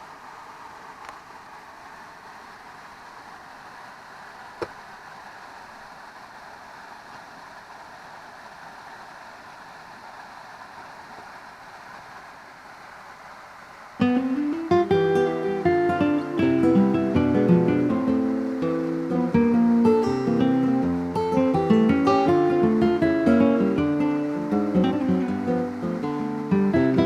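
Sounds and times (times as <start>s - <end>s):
stream rushing: 0.0s - 27.0s
acoustic guitar music: 14.0s - 27.0s.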